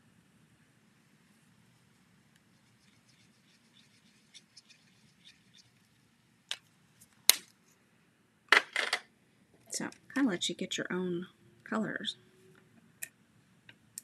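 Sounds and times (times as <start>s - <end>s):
marker tip scratchy dabbing: 2.5s - 5.9s.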